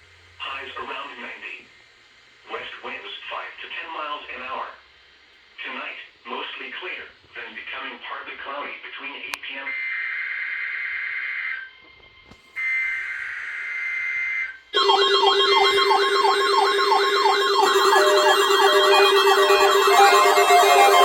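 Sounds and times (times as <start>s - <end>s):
buzzing data bursts: 14.8s - 21.0s
warbling siren-like alert tones: 14.8s - 21.0s.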